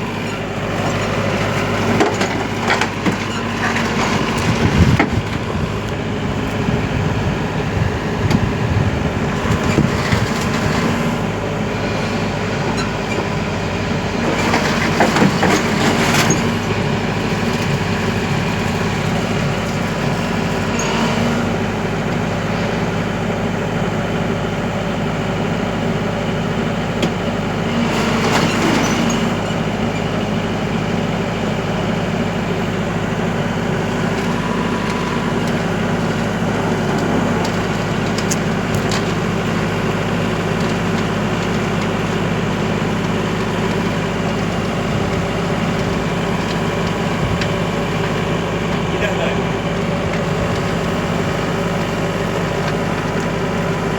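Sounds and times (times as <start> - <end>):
excavator diesel engine running: 0.0 - 53.9
metallic creaking and clanking: 0.1 - 7.1, 33.8 - 47.7.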